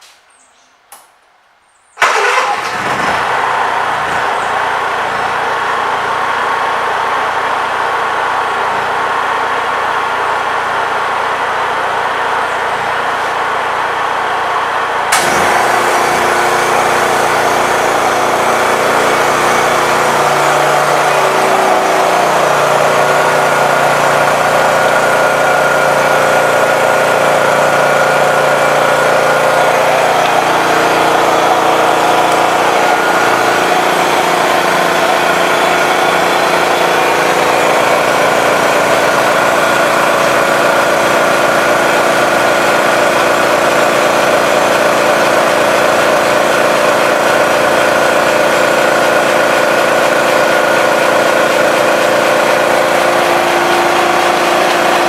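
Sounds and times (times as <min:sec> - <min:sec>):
generator running: 0:02.0 - 0:55.0
electric air compressor running: 0:15.1 - 0:55.0.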